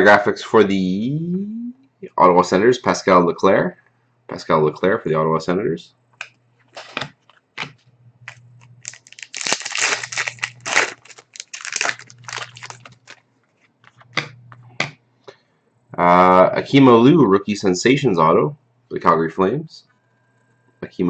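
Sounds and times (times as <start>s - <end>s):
faint steady low hum: 0.0s - 21.0s
trading cards rustling and crinkling: 6.6s - 14.4s.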